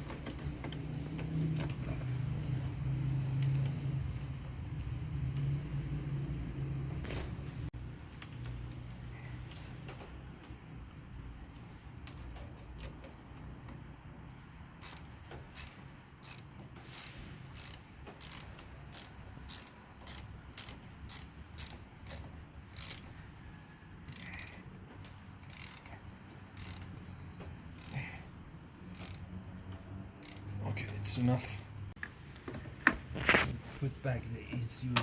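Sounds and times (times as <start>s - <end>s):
ratchet wrench clicking: 14.8s - 23.2s, 24.0s - 27.0s, 27.8s - 29.3s, 30.2s - 30.6s.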